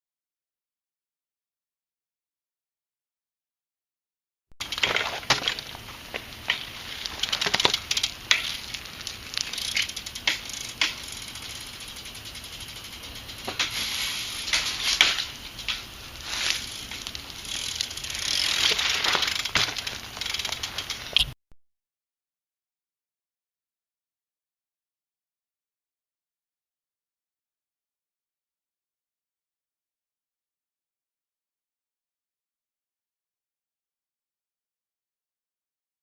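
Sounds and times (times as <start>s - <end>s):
bike clicks and rattles: 4.6s - 21.4s
rushing hiss: 13.5s - 19.1s.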